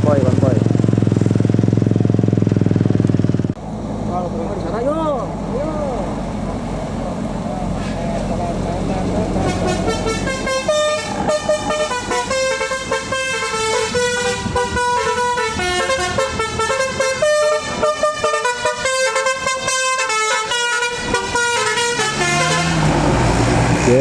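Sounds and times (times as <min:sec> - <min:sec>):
multi-tone bus horn melody: 0:09.1 - 0:23.4.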